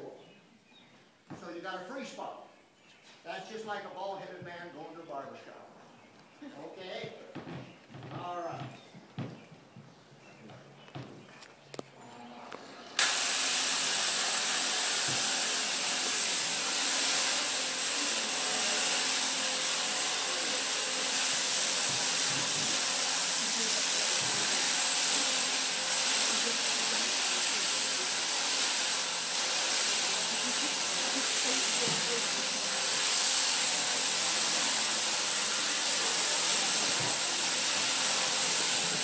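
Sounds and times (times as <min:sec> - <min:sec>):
electric shears whining: 0:12.0 - 0:39.0.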